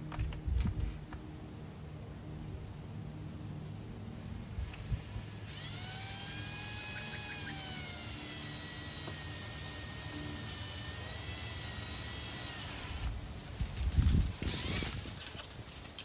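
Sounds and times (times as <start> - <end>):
electric drill whining: 4.8 - 13.2, 14.4 - 15.1.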